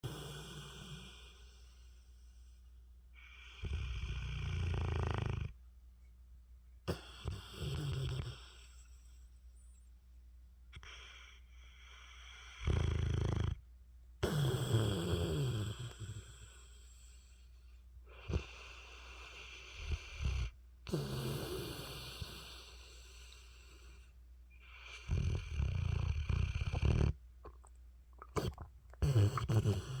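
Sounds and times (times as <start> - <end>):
dog snoring: 0.0 - 2.0, 3.2 - 5.6, 6.9 - 9.0, 10.8 - 13.6, 14.2 - 17.4, 18.1 - 27.6, 28.2 - 30.0
dog snorting: 18.1 - 23.4, 24.8 - 27.6, 28.2 - 30.0.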